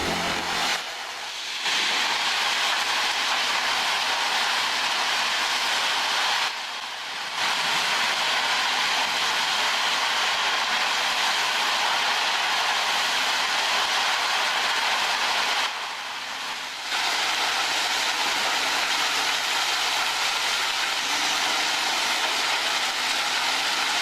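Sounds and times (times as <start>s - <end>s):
construction machinery rushing noise: 0.0s - 1.1s.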